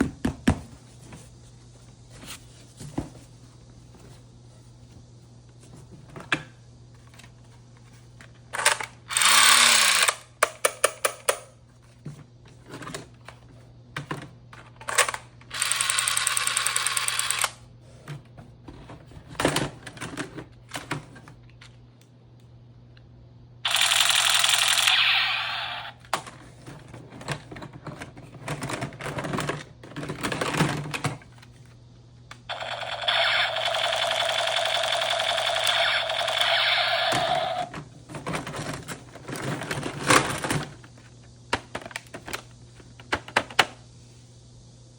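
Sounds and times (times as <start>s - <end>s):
toy blaster rattling bursts: 8.6s - 10.3s, 14.9s - 17.6s, 23.6s - 26.0s, 32.5s - 37.7s.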